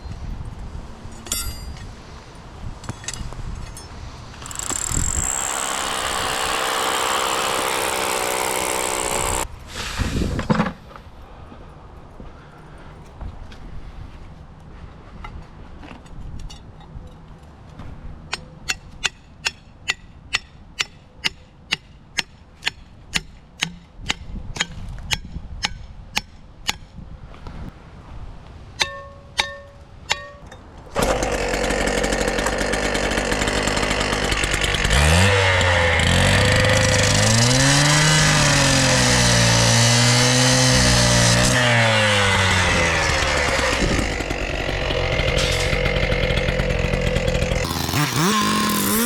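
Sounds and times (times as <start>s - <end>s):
hammer striking steel: 1.2s - 1.9s, 28.8s - 30.6s
small gas engine under load: 4.3s - 10.8s, 30.9s - 49.0s.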